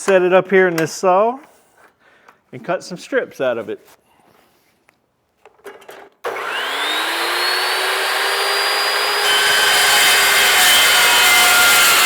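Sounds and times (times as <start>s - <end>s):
power saw motor whine: 6.2s - 12.0s
saw blade cutting material: 6.3s - 12.0s.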